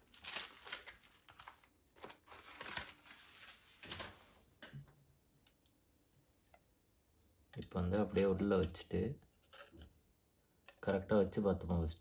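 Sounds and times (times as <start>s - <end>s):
plastic film crinkling: 0.0s - 4.4s.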